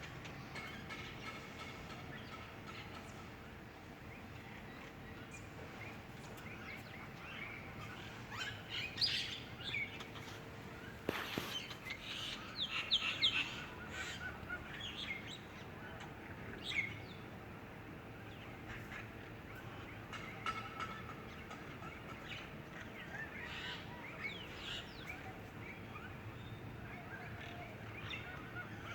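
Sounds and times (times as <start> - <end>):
outdoor background hiss: 0.0 - 28.9
small birds chirping: 0.4 - 15.8.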